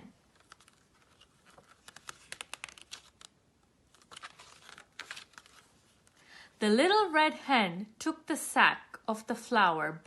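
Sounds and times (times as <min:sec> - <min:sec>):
faint clicking and crinkling: 0:00.2 - 0:06.3.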